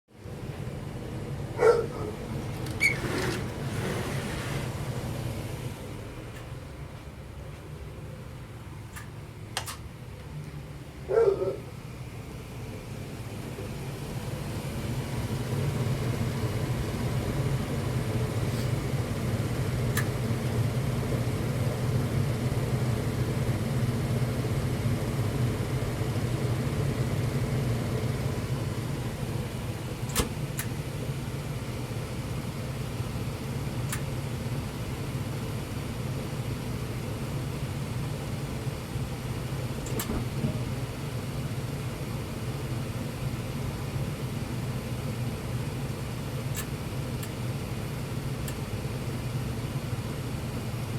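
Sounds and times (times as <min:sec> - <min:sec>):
furnace humming: 0:00.1 - 0:50.9
sharp furnace clicks: 0:08.9 - 0:09.9, 0:19.9 - 0:20.2, 0:39.8 - 0:40.6.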